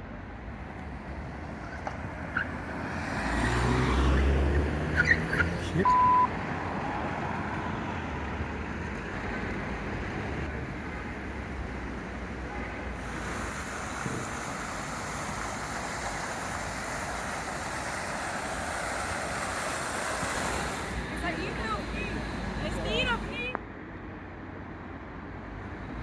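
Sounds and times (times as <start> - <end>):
city street traffic rumble: 0.0 - 26.0.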